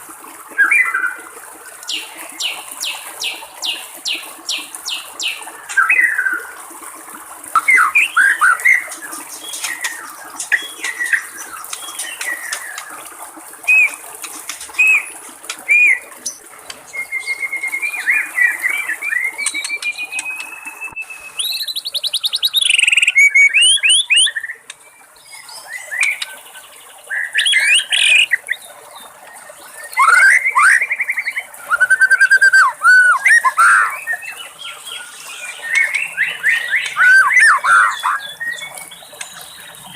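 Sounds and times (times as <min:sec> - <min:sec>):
babbling water: 0:00.0 - 0:39.9
bird singing whistles and trills: 0:07.6 - 0:12.9, 0:13.6 - 0:14.0, 0:14.7 - 0:15.1, 0:15.7 - 0:26.4, 0:27.1 - 0:28.6, 0:29.6 - 0:39.9.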